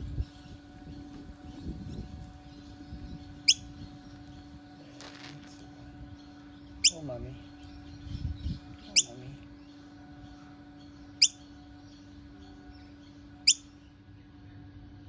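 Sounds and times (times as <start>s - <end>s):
bird giving sharp high calls: 3.4s - 3.7s, 6.8s - 7.1s, 8.9s - 9.2s, 13.5s - 13.7s.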